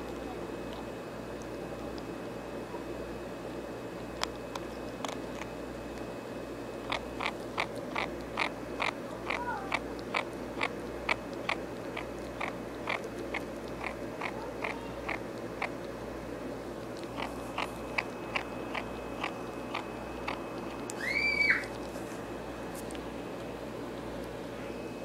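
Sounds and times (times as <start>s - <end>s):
ferret eating crisp clicks: 0.0s - 2.2s, 4.0s - 6.1s, 6.8s - 21.0s.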